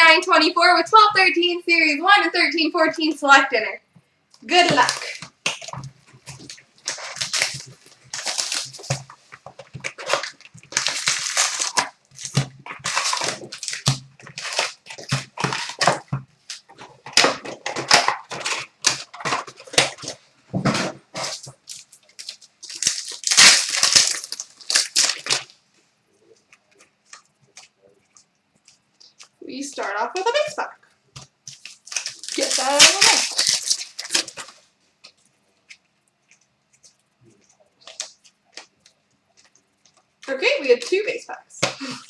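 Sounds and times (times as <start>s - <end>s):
plastic wrappers crinkling and tearing: 4.4s - 25.7s, 31.1s - 42.0s.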